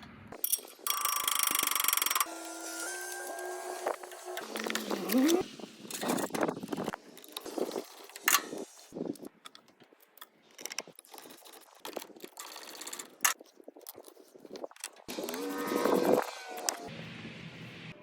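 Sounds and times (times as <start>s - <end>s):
mechanical clicks and rattles: 0.4s - 2.3s.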